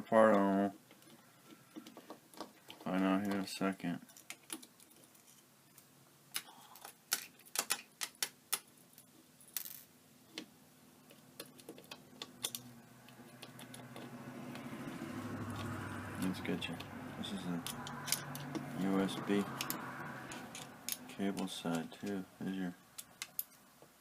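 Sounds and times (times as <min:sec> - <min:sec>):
clicks of hard parts handled: 0:17.6 - 0:22.2.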